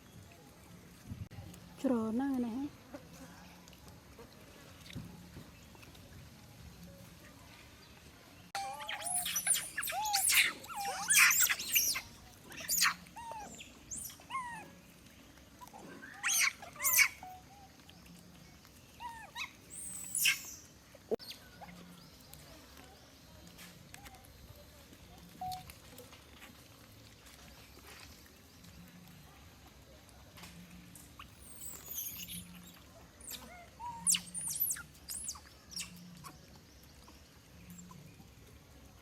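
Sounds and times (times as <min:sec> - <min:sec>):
monkeys squealing and chirping: 0:08.6 - 0:14.8, 0:15.6 - 0:17.8, 0:19.0 - 0:21.8, 0:31.1 - 0:36.4, 0:37.7 - 0:38.1.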